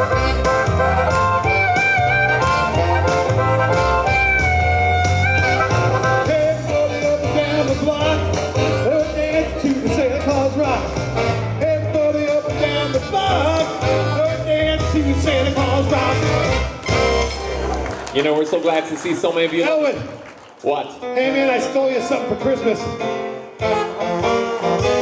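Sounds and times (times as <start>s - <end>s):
live rock and roll band with horns: 0.0s - 18.1s, 23.6s - 25.0s.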